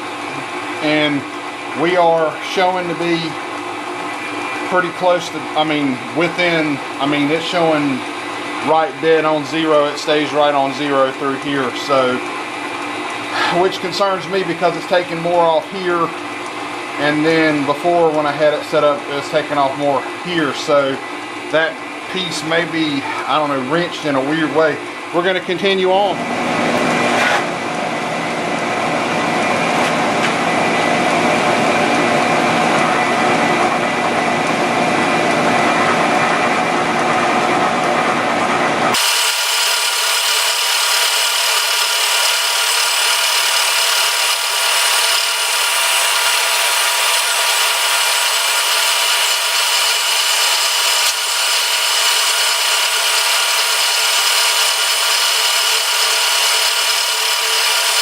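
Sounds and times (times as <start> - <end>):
milling machine cutting metal: 38.9 - 58.0.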